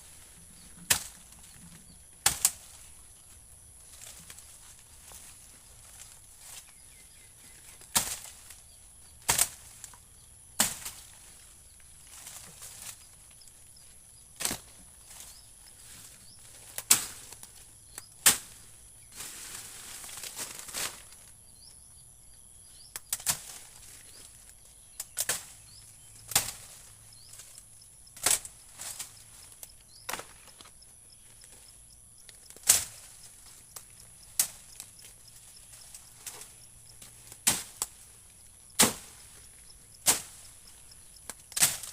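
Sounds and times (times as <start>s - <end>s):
blade chopping into wood: 0.8s - 1.2s, 2.2s - 2.6s, 37.4s - 37.9s, 38.8s - 39.1s.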